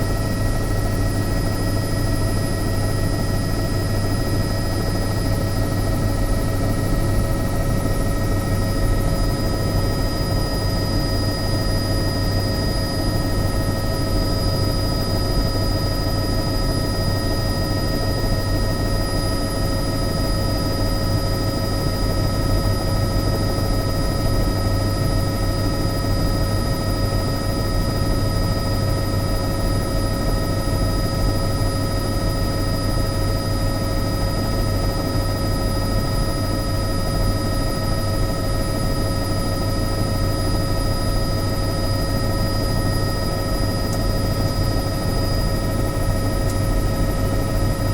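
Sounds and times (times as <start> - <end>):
helicopter running: 0.0 - 47.9.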